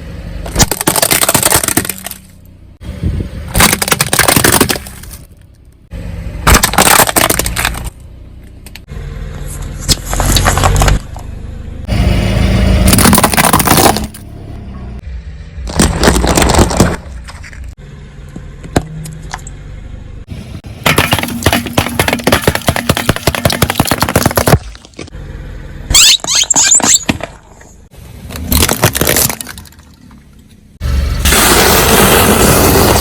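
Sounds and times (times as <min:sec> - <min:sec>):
objects crunching under car tyres: 0:00.4 - 0:02.5, 0:03.5 - 0:05.8, 0:06.4 - 0:11.4, 0:12.8 - 0:14.3, 0:15.6 - 0:19.6, 0:20.6 - 0:25.2, 0:25.9 - 0:30.6.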